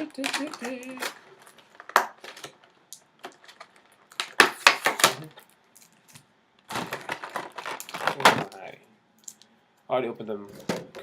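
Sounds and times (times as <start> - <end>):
packaging clicks and scrapes: 0.0 - 5.4, 6.7 - 8.6
cardboard packaging rustling: 0.0 - 8.7.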